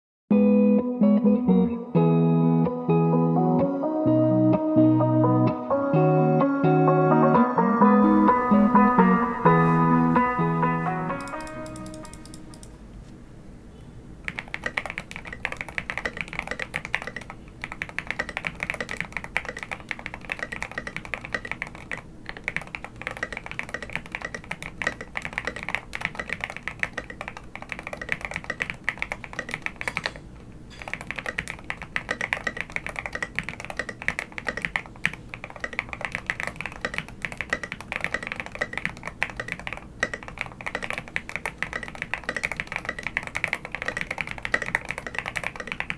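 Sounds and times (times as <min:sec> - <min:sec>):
typing on mechanical keyboard: 0:08.0 - 0:12.8, 0:14.2 - 0:45.9.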